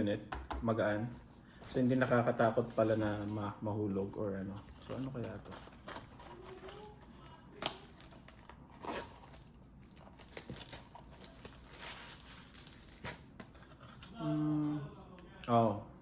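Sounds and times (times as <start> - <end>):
packaging rustling and crinkling: 1.6 - 14.1.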